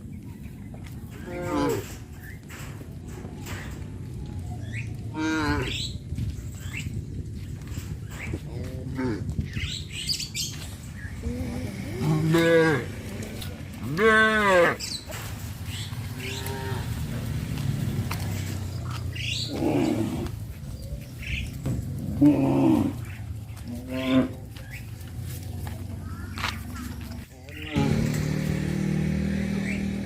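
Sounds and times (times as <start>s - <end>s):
cattle mooing: 1.2s - 2.0s, 5.1s - 5.9s, 11.2s - 14.8s, 16.1s - 17.3s, 22.0s - 23.1s, 23.7s - 24.6s, 27.5s - 30.0s.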